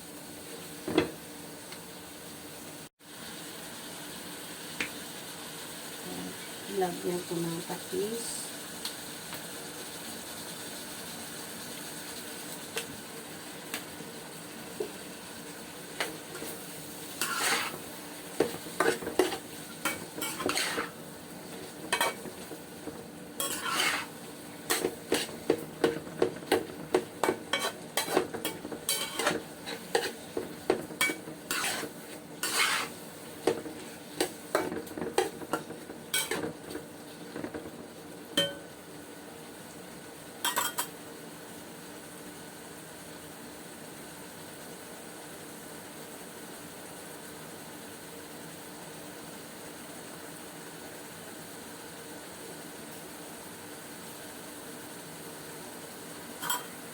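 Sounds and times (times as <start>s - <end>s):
low sizzle of meat: 0.0s - 56.9s
utensil scraping and clinking in pot: 17.2s - 36.8s, 40.4s - 40.9s, 56.4s - 56.8s.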